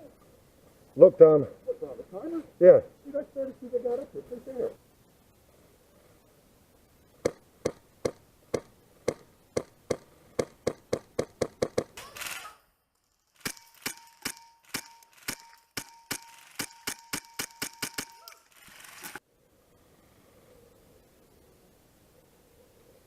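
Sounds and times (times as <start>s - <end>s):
airsoft gun shots: 13.4s - 18.4s.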